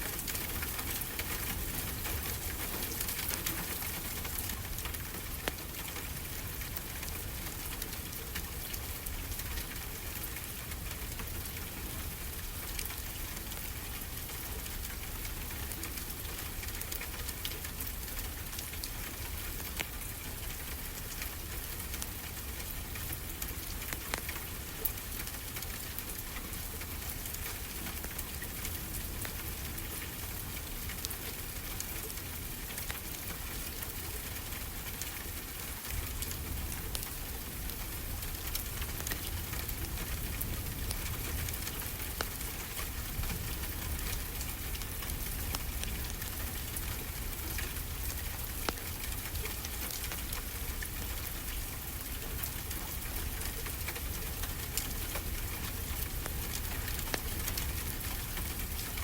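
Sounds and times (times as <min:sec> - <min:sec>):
wood fire crackling and popping: 0:30.4 - 0:59.0.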